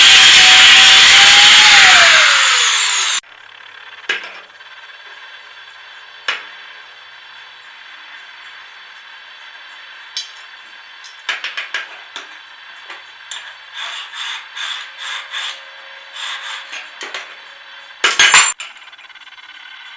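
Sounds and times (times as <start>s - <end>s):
hand tool scraping strokes: 11.9s - 18.6s.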